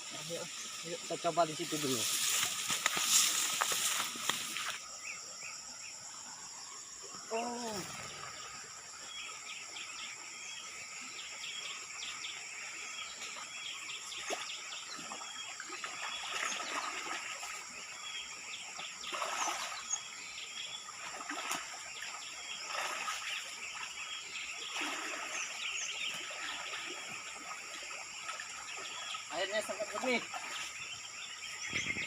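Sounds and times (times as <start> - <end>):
high insect drone: 0.0 - 32.0
water trickling: 7.1 - 32.0
bird chirps: 28.7 - 32.0.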